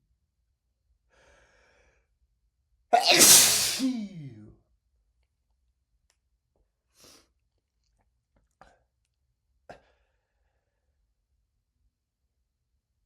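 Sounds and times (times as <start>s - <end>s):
faint breath or sniff: 3.0s - 4.1s.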